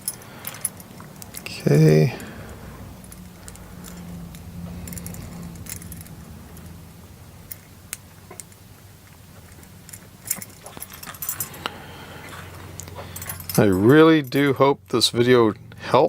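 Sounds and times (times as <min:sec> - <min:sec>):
metal screws clicking and clinking: 0:00.0 - 0:01.8, 0:03.0 - 0:06.8, 0:07.4 - 0:11.7, 0:12.3 - 0:15.0
steady low hum: 0:00.0 - 0:16.0.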